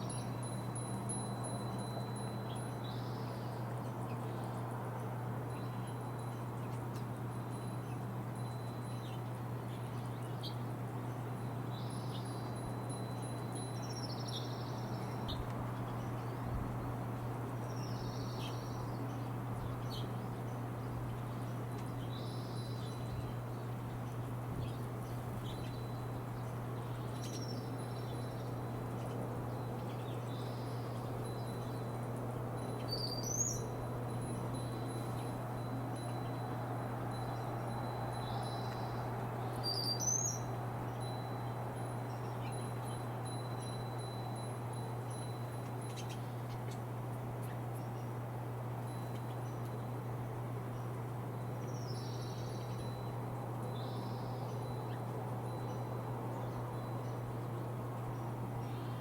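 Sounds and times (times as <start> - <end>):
songbirds chirping: 0.0 - 59.0
steady low hum: 0.0 - 59.0.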